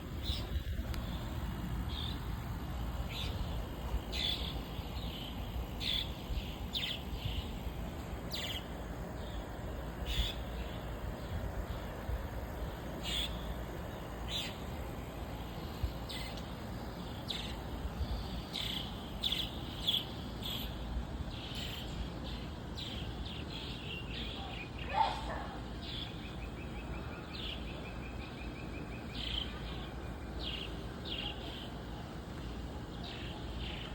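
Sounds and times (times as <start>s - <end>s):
swallows twittering: 3.1s - 7.6s, 8.3s - 11.9s, 12.6s - 14.7s.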